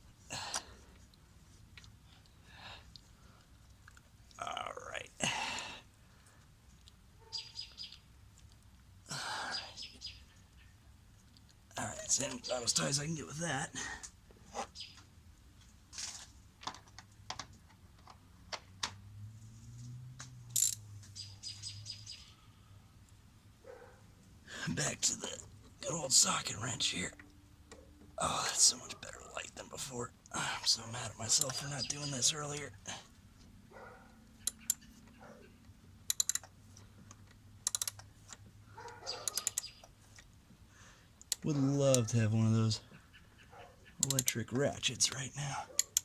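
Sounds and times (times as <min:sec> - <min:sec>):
socket wrench ratcheting: 0:20.6 - 0:20.8, 0:34.5 - 0:34.8, 0:36.1 - 0:36.5, 0:37.6 - 0:38.1, 0:39.2 - 0:39.7
ratchet wrench clicking rapidly: 0:36.1 - 0:36.4, 0:37.6 - 0:38.0.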